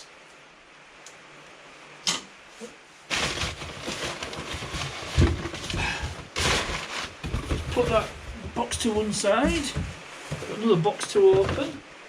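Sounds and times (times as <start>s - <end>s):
cardboard rustling and scraping: 3.1s - 11.9s.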